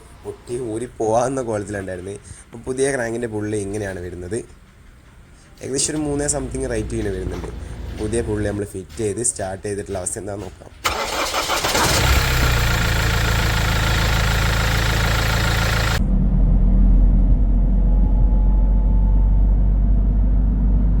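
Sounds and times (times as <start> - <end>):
car engine idling: 3.5 - 9.0, 10.8 - 16.4
low steady hum: 11.8 - 21.0.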